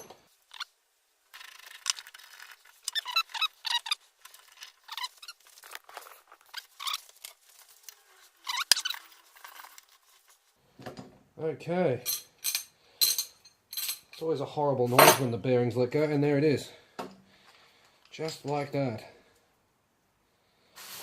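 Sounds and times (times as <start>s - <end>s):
metal squeaking and creaking: 1.4s - 7.1s, 8.0s - 9.7s.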